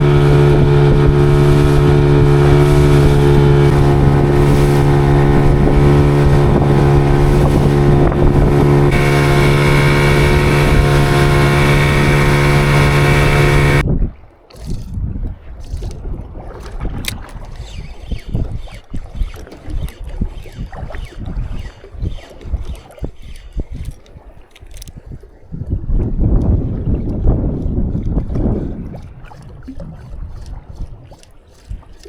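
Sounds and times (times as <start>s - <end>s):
boat engine running: 0.0s - 13.8s
wind on microphone: 0.0s - 32.0s.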